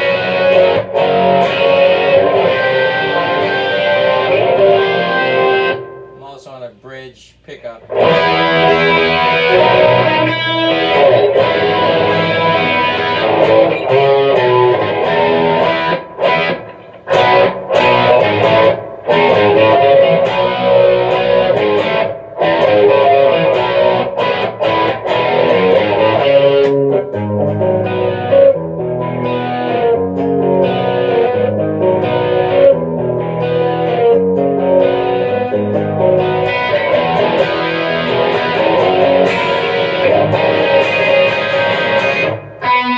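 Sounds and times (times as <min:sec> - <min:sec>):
overdriven electric guitar: 0:00.0 - 0:06.2, 0:07.8 - 0:42.9.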